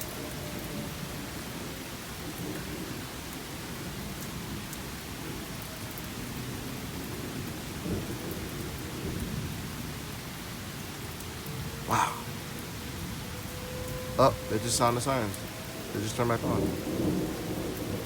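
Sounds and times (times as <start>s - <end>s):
distant tornado siren: 0.0s - 18.0s
steady rain falling: 0.0s - 18.0s
low thunder rumbling: 6.3s - 18.0s.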